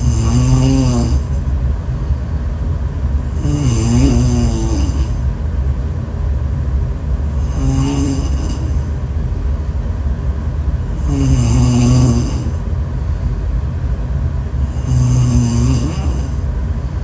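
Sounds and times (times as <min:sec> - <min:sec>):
heavy snoring: 0:00.0 - 0:01.4, 0:03.3 - 0:05.2, 0:07.4 - 0:08.9, 0:11.0 - 0:12.6, 0:14.6 - 0:16.4.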